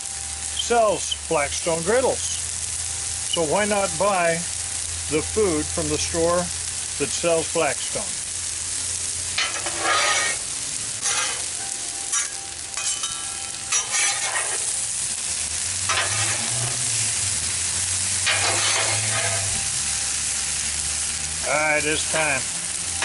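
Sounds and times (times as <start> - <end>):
stir-fry sizzling on griddle: 0.0 - 23.0
spatula scraping griddle: 9.2 - 23.0.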